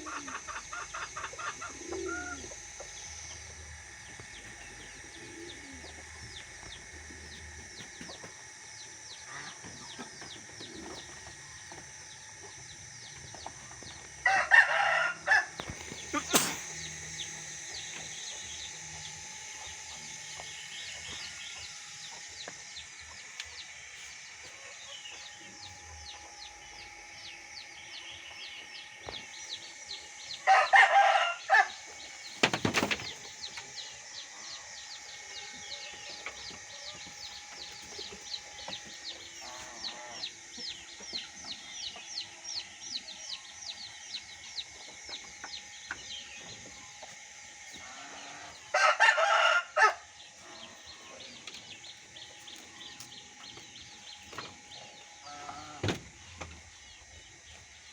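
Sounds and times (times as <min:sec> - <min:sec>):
small birds chirping: 0:00.0 - 0:14.3, 0:15.6 - 0:48.7, 0:50.1 - 0:57.9
rooster crowing: 0:14.2 - 0:16.7, 0:30.4 - 0:31.9, 0:47.9 - 0:50.7.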